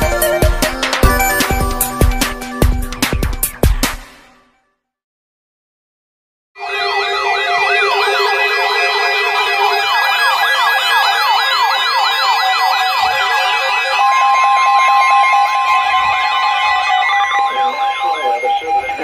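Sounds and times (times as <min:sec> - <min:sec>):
electronic siren wailing: 0:00.0 - 0:03.8, 0:06.6 - 0:19.0
steady alert tone: 0:00.0 - 0:03.9
steady alarm tones: 0:00.0 - 0:04.1, 0:06.6 - 0:19.0.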